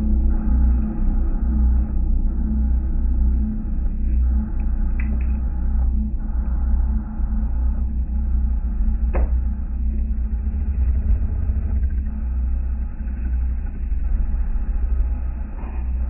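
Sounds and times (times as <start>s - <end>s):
vehicle engine rumbling: 6.2s - 16.0s.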